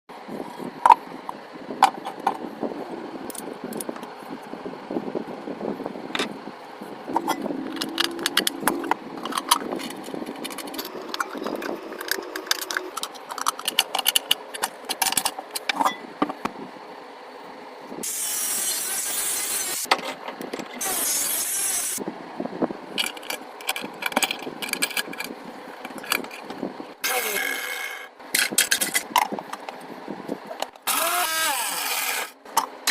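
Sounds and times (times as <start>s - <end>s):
steady whine: 0.1s - 30.9s
metal parts clicking and knocking: 7.1s - 16.0s, 23.0s - 26.6s
loud hissing bursts: 18.0s - 19.9s, 20.8s - 22.0s.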